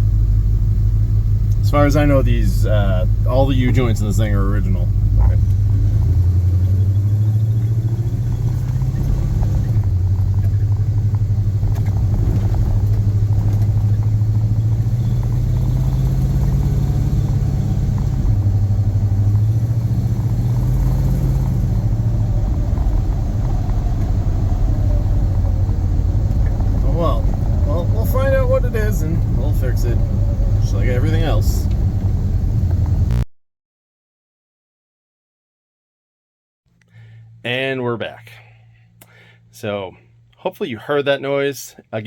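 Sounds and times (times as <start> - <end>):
truck engine droning: 0.0 - 33.2.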